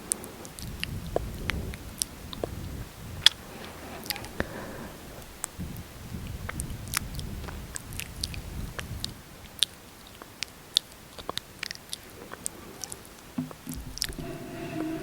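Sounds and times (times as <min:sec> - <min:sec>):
soft low rustle: 0:00.1 - 0:09.0.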